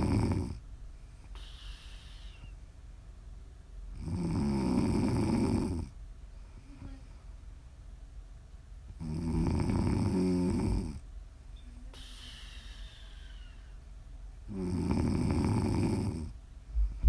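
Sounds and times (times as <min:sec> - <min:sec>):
woman snoring: 0:00.0 - 0:00.6, 0:04.0 - 0:05.9, 0:09.0 - 0:11.0, 0:14.5 - 0:16.4
quiet breathing: 0:00.0 - 0:02.7, 0:04.7 - 0:07.6, 0:08.9 - 0:17.0.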